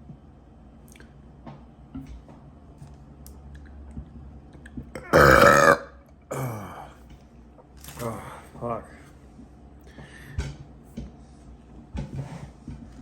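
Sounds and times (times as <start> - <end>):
man burping loudly: 5.0 - 7.0.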